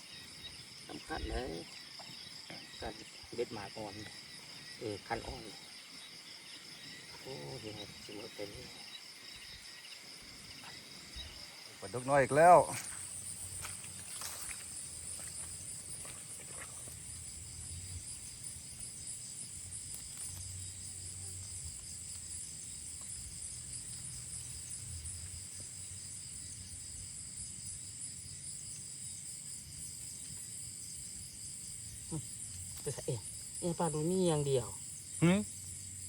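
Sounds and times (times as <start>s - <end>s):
insects trilling: 0.0s - 36.0s.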